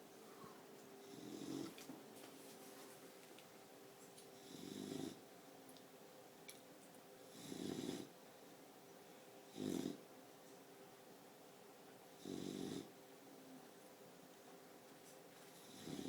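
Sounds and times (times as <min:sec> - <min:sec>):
puppy snoring: 0:01.0 - 0:01.8, 0:04.4 - 0:05.2, 0:07.3 - 0:08.2, 0:09.5 - 0:10.1, 0:12.1 - 0:12.9, 0:15.6 - 0:16.0.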